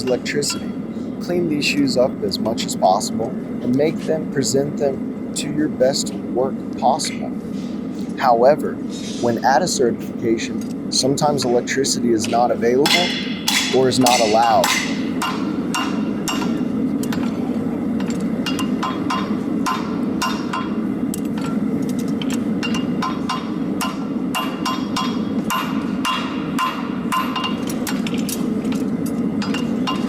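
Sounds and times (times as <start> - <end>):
hammer tapping on steel: 12.2 - 16.6.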